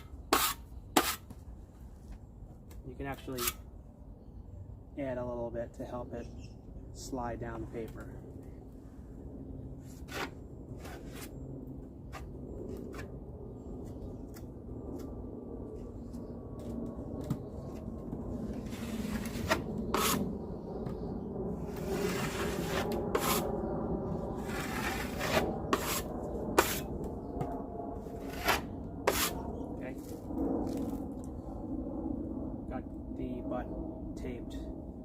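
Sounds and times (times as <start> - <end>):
drywall knife scraping: 0.0 - 1.3, 3.2 - 3.6, 10.0 - 11.3, 18.6 - 20.3, 21.7 - 23.5, 24.3 - 26.9, 28.1 - 29.5.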